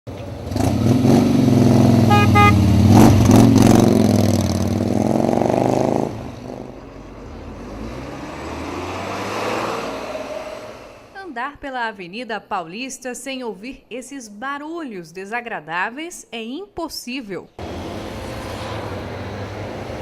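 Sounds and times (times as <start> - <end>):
steady traffic rumble: 0.1 - 11.2, 17.6 - 20.0
vehicle engine passing close: 0.1 - 11.2, 17.6 - 20.0
car horn toots: 2.0 - 2.8.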